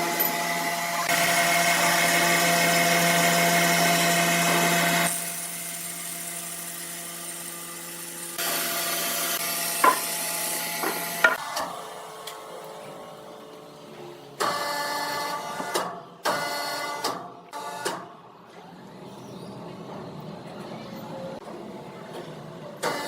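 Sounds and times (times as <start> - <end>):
saw cutting wood: 0.0 - 11.8
sawmill machinery humming: 0.0 - 15.6
sharp knocks: 9.8 - 10.1.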